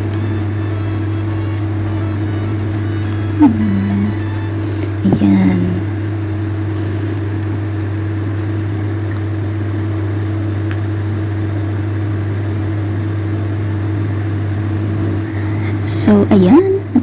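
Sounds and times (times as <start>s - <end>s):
motor hum with hiss: 0.0s - 8.1s.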